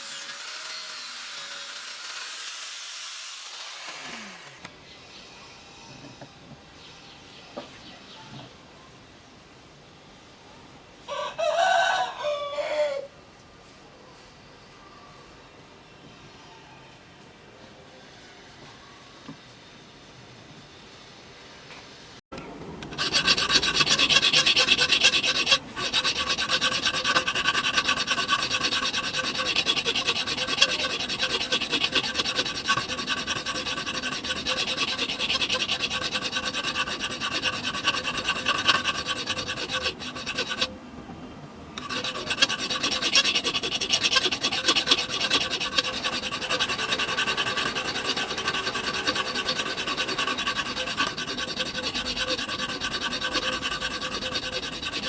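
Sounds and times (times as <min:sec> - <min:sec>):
file rasping on metal: 0:22.8 - 0:40.7, 0:41.8 - 0:55.0.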